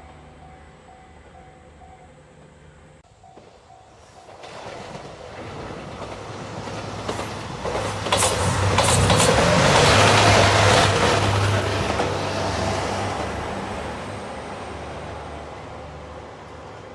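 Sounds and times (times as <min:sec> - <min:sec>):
faint crossing bell dinging: 0:00.0 - 0:02.2
diesel train passing: 0:00.0 - 0:16.9
wheels clicking over rail joints: 0:04.2 - 0:12.3.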